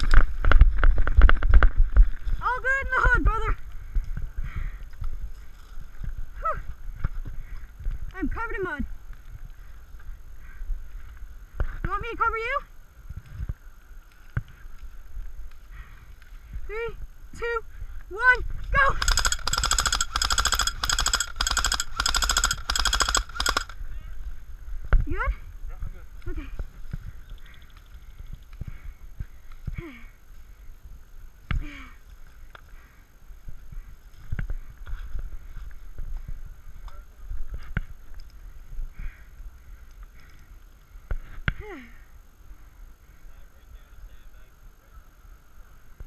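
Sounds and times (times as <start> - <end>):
low rumbling wind: 0.0 - 46.0
airsoft rifle full-auto bursts: 18.9 - 23.8.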